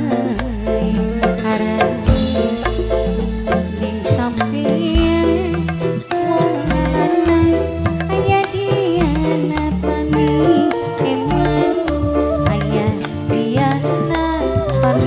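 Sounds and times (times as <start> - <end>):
repeating bass notes: 0.0 - 10.7
drum and shaker percussion: 0.0 - 15.0.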